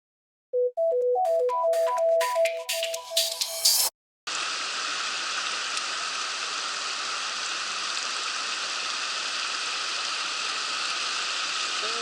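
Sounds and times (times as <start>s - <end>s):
intro music jingle with drums: 0.9s - 3.9s.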